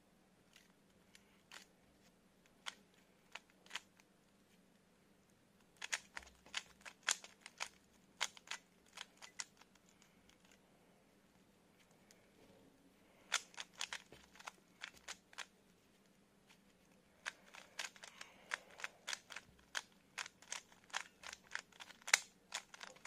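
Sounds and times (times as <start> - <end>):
plastic puzzle cube clicking: 0.5 - 1.7, 2.6 - 4.0, 5.7 - 10.6, 13.3 - 15.5, 17.2 - 23.0.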